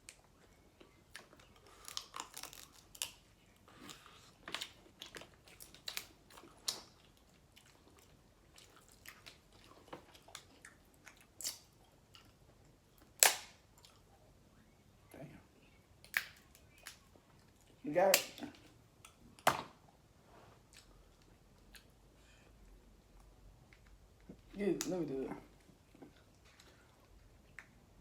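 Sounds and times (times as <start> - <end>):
chewing and crunching: 0.0 - 14.2, 20.6 - 22.0, 23.0 - 27.9.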